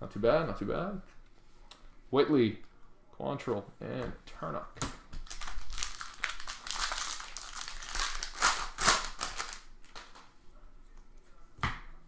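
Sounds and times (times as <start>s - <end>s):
cards rustling: 5.2s - 10.3s
wrapper crinkling: 5.2s - 10.3s.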